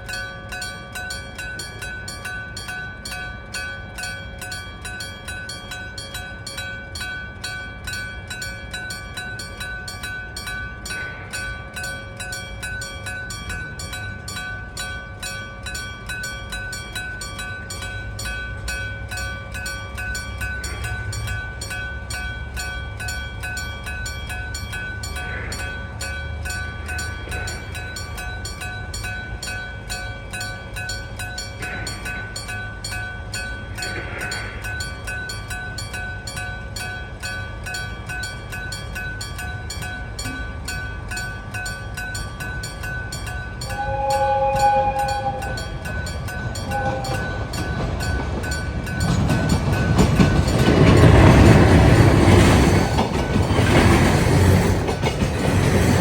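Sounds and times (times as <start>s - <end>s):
train rumble: 0.0s - 56.0s
level crossing bell ringing: 35.6s - 53.1s.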